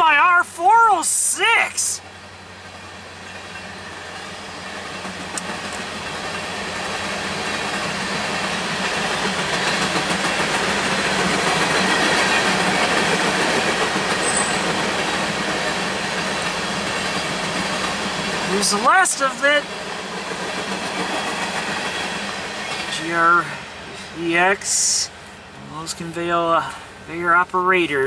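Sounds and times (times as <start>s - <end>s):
freight train rumbling past: 0.0s - 28.0s
wheels clattering over rail joints: 2.6s - 18.5s.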